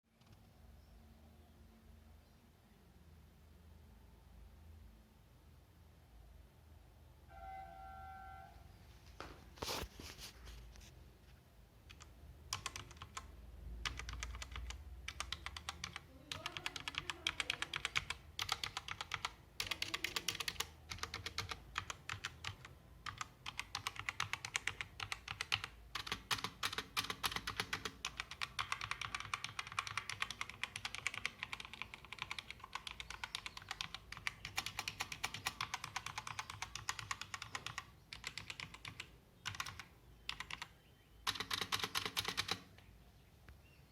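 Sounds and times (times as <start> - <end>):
mechanical keyboard typing: 11.8 - 42.7.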